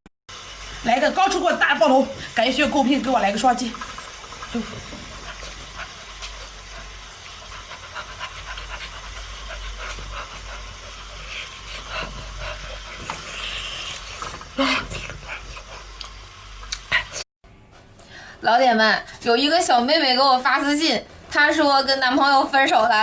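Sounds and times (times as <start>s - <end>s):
wet chewing and sucking: 3.8s - 17.2s
breaths: 18.0s - 18.4s.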